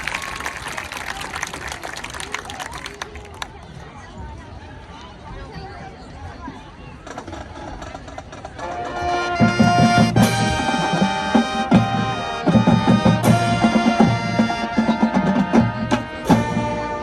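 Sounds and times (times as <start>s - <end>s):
marching band playing: 8.4s - 17.0s.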